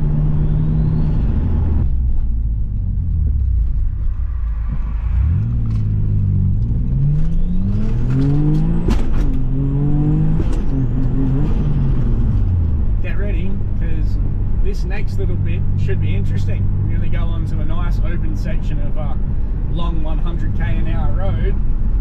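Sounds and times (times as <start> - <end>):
car engine accelerating: 0.0 - 18.0
faint high turbo whistle: 7.2 - 7.9.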